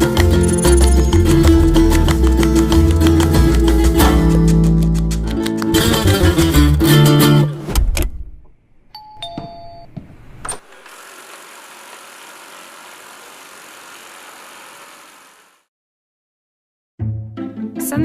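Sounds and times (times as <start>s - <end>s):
music: 0.0s - 7.7s, 17.0s - 18.0s.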